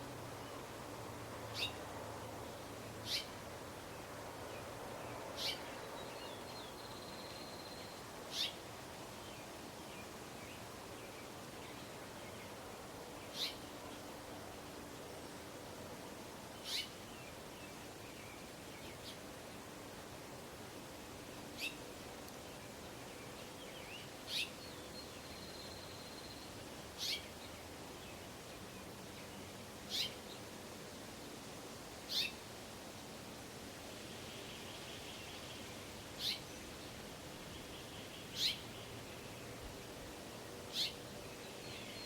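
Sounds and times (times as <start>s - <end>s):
steady background hiss: 0.0s - 42.0s
bird chirping: 16.6s - 16.9s, 23.7s - 27.3s, 29.9s - 30.2s, 32.1s - 32.4s, 36.2s - 36.5s, 37.5s - 39.5s, 40.7s - 42.0s.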